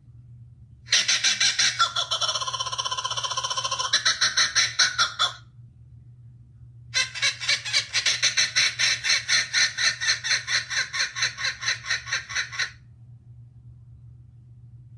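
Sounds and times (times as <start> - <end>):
cartoon kookaburra laugh: 0.9 - 5.4, 7.0 - 12.8.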